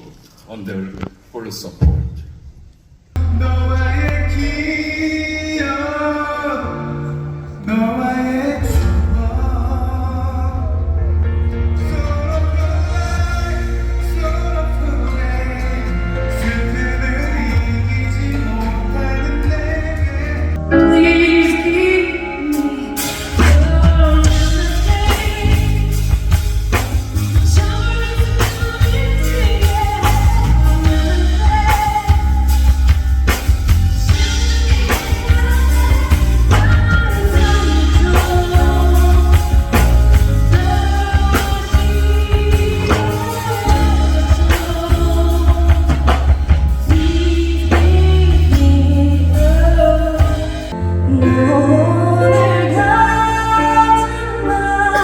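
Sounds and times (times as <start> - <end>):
heavy bass: 3.2 - 55.0
person singing: 3.2 - 55.0
drum beat: 23.4 - 49.0.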